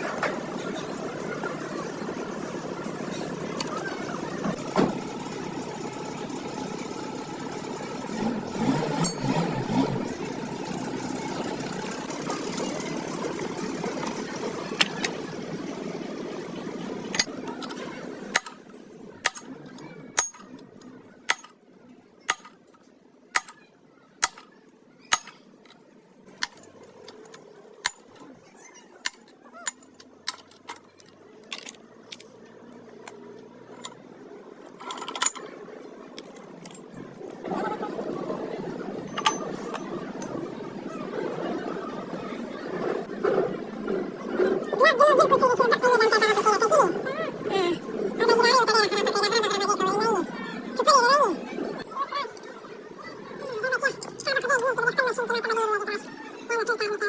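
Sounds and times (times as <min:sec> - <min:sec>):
machine hum: 0:00.0 - 0:20.9.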